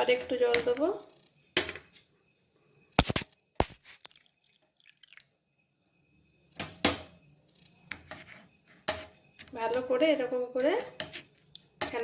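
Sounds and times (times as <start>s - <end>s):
faint water dripping: 3.9s - 5.4s
utensils clinking against strainer: 11.8s - 12.0s.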